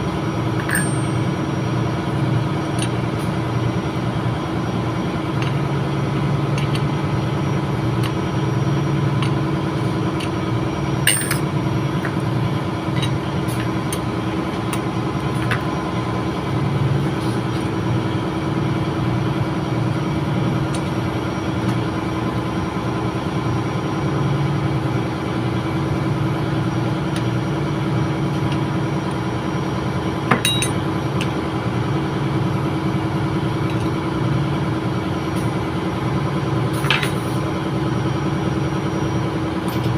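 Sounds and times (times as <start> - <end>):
ship machinery droning: 0.0 - 39.9
sharp metallic clinks: 0.6 - 1.4, 11.1 - 11.5.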